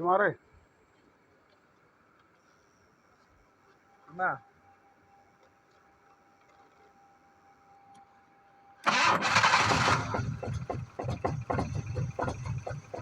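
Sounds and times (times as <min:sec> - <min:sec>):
engine cranking on starter: 0:08.8 - 0:13.0
engine stumbling chugs: 0:08.9 - 0:13.0.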